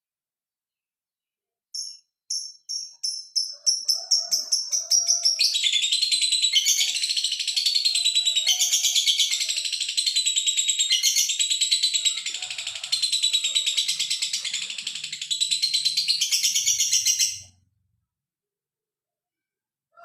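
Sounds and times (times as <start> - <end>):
lovebird chattering trill: 1.8 - 17.5.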